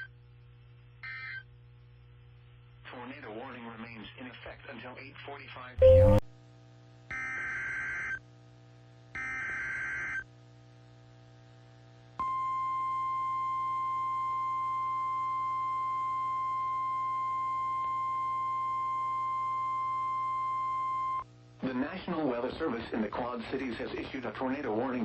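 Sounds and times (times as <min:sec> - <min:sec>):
steady warning alarm tone: 0:05.8 - 0:06.2.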